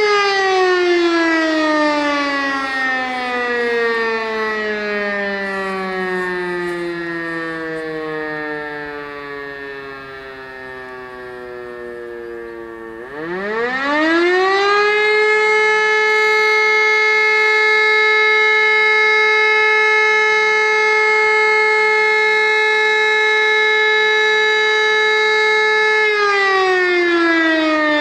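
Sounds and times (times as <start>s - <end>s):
motor siren wailing: 0.0s - 28.0s.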